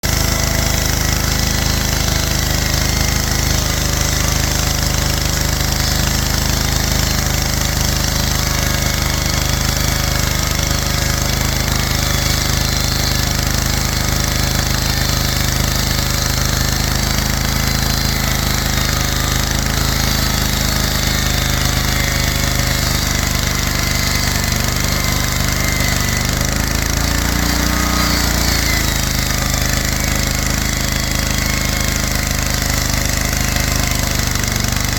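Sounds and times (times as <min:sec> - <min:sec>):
rapid knocking rattling: 0:00.0 - 0:34.9
sawmill engine running: 0:00.0 - 0:34.9.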